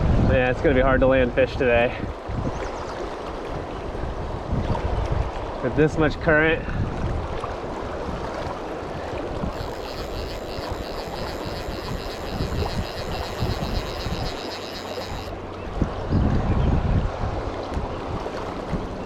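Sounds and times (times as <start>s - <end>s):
wind rumble on microphone: 0.0s - 19.0s
faint high-pitched ticking: 9.5s - 15.4s.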